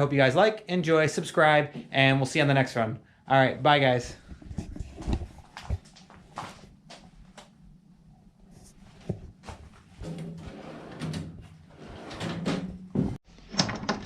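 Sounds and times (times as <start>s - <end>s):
metal drawer sliding on runners: 10.0s - 13.2s.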